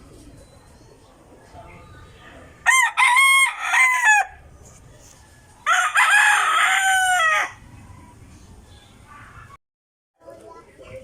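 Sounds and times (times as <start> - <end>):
rooster crowing: 2.6 - 4.4, 5.1 - 8.2.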